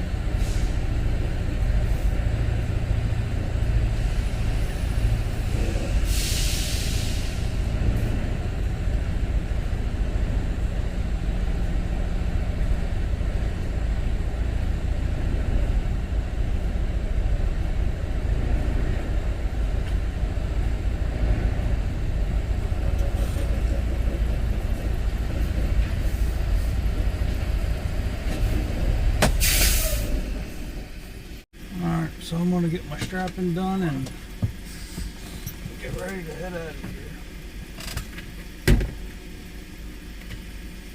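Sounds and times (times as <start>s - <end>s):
diesel truck engine idling: 0.0s - 40.9s
air release hiss: 5.7s - 7.6s, 29.2s - 30.2s.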